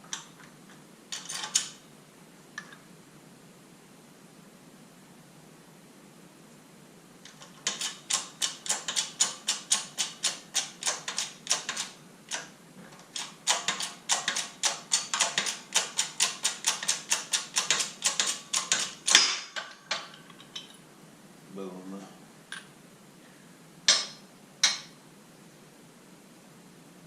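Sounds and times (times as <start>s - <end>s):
sharp metallic clicks from tool: 7.6s - 12.5s, 13.2s - 19.5s.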